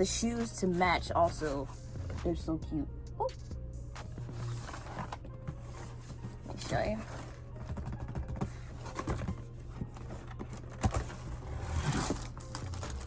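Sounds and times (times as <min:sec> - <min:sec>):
packaging rustling: 0:04.2 - 0:13.0.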